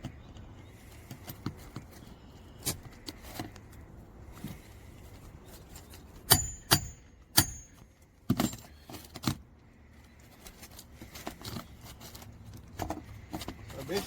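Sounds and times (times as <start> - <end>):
hammer striking metal: 6.3 - 7.8.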